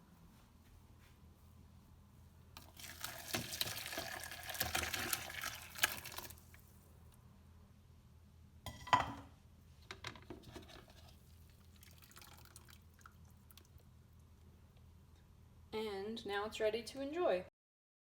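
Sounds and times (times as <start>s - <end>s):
tea pouring and splashing into bowl: 2.6s - 6.8s, 10.5s - 14.3s.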